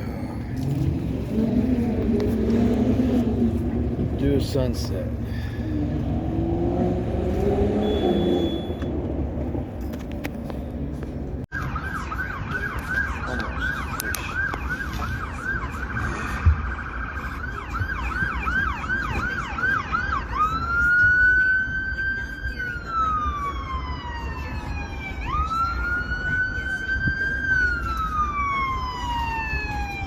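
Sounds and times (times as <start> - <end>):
emergency vehicle siren: 5.2 - 9.3, 11.5 - 30.0.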